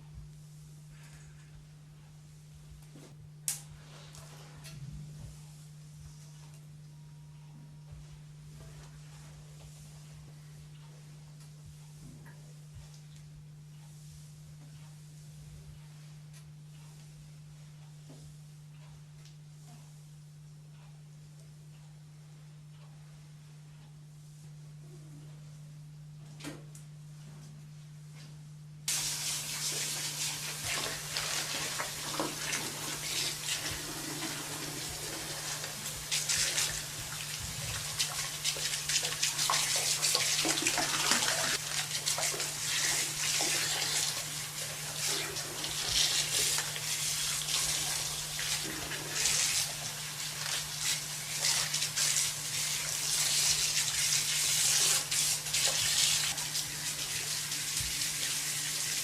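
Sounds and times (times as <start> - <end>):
steady low hum: 0.0 - 55.0
water spraying onto hair: 28.9 - 59.0.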